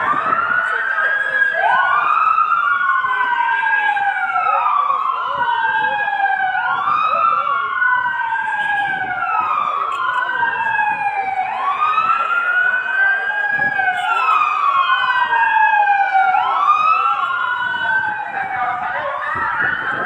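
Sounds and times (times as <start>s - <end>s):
emergency sirens wailing: 0.0s - 20.0s.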